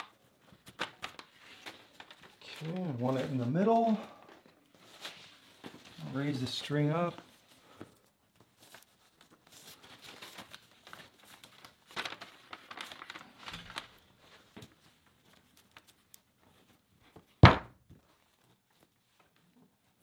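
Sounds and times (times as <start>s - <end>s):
loud sharp knock: 17.4s - 17.7s.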